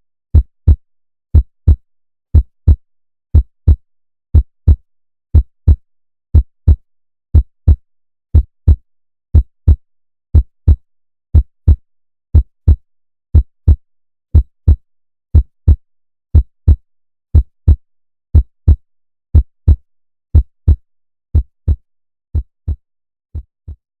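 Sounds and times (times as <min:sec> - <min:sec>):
heartbeat thumps: 0:07.4 - 0:07.8, 0:08.4 - 0:08.8, 0:09.4 - 0:09.8, 0:10.4 - 0:10.8, 0:11.4 - 0:11.8, 0:12.4 - 0:12.8, 0:14.4 - 0:14.8, 0:15.4 - 0:15.8, 0:19.4 - 0:19.8, 0:20.4 - 0:20.8, 0:21.4 - 0:21.8, 0:22.4 - 0:22.8, 0:23.4 - 0:23.8.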